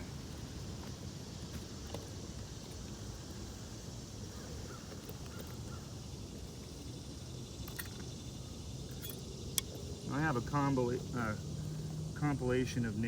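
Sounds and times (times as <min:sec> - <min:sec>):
outdoor background noise: 0:00.0 - 0:13.0.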